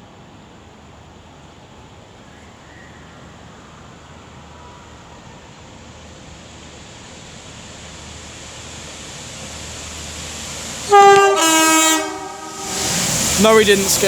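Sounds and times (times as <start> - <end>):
rail vehicle rumbling: 0.0 - 14.0
loud two-note horn: 10.9 - 13.0.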